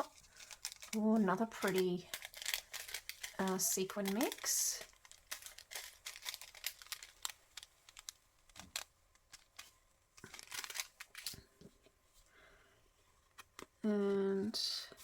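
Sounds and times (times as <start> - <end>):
paper packet crinkling: 0.0 - 11.5.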